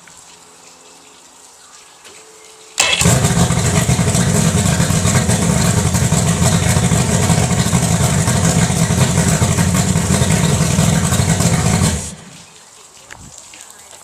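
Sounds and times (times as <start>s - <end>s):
outboard motor running: 2.8s - 12.5s.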